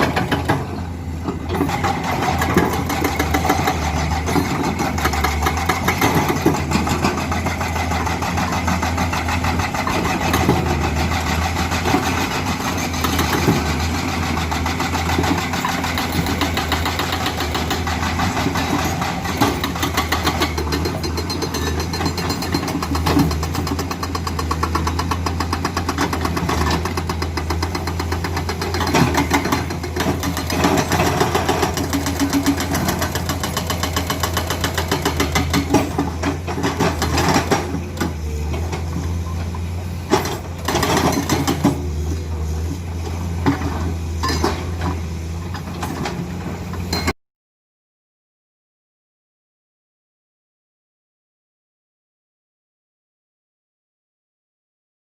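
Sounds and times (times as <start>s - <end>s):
hydraulic breaker hammering rock: 0.0s - 39.2s, 40.0s - 42.2s
excavator diesel engine under load: 0.0s - 47.2s.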